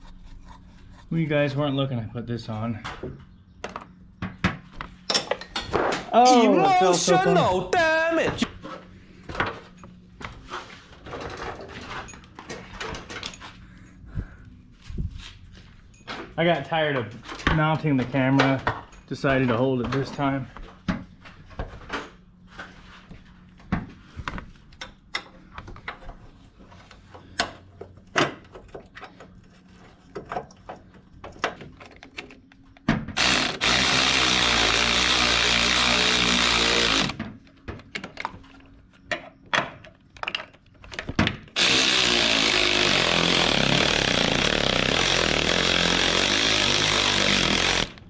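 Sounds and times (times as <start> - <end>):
tools and parts clicking: 5.1 - 6.1, 27.4 - 32.9
power tool driving bolts: 33.1 - 37.3, 41.5 - 48.0.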